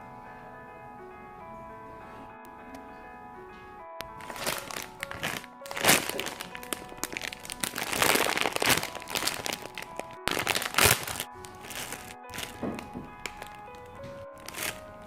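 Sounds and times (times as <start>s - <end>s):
background music: 0.0s - 15.0s
plastic packaging crinkling: 4.0s - 15.0s.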